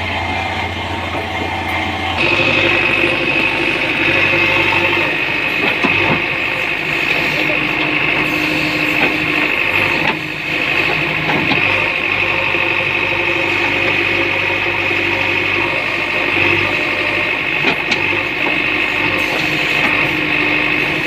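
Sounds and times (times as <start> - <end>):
high whine: 0.0 - 10.7
diesel engine running: 0.0 - 21.0.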